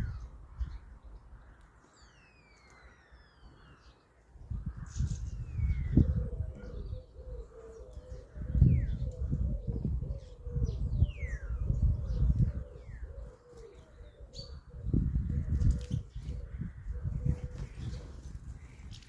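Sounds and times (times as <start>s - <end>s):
birds whistling: 1.8s - 4.1s, 4.7s - 19.0s.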